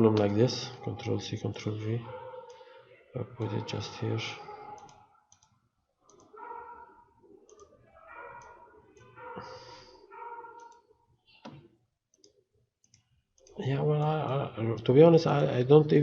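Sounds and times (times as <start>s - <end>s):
keyboard clicks: 4.7s - 5.5s, 7.5s - 7.7s, 10.5s - 10.8s
computer mouse clicks: 4.8s - 6.3s, 7.5s - 7.7s, 10.6s - 14.1s.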